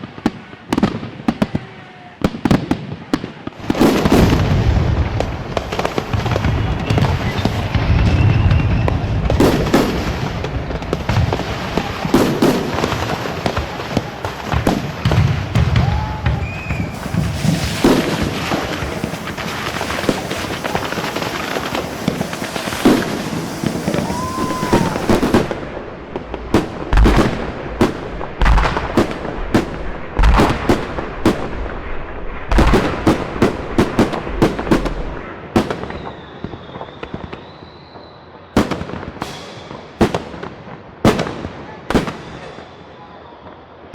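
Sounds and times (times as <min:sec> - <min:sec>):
deep firework booms: 0:00.0 - 0:37.5
fireworks crackling and banging: 0:00.0 - 0:43.9
short firework whistle: 0:06.3 - 0:10.0, 0:15.6 - 0:25.6, 0:35.8 - 0:38.6
steady high whistle: 0:15.9 - 0:17.6, 0:19.9 - 0:25.3, 0:36.0 - 0:38.4.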